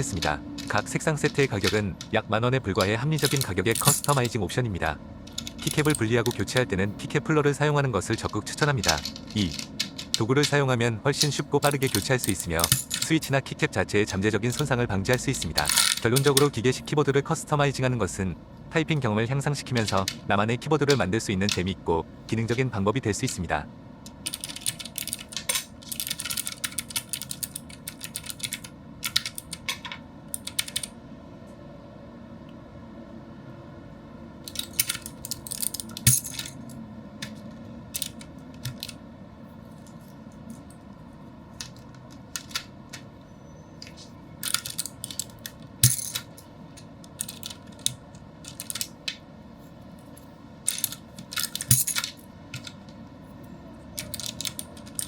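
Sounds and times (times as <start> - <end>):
clicky mechanical keyboard typing: 30.4 - 30.9.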